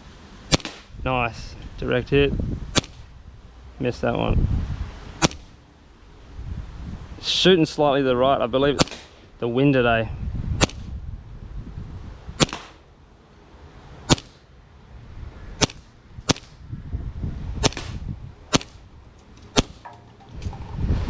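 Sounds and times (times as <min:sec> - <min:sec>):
gel blaster pistol shots: 0:00.5 - 0:01.0, 0:02.7 - 0:03.0, 0:05.2 - 0:05.5, 0:08.8 - 0:09.2, 0:10.6 - 0:10.9, 0:12.4 - 0:12.8, 0:14.1 - 0:14.4, 0:15.6 - 0:16.6, 0:17.6 - 0:18.8, 0:19.6 - 0:19.9.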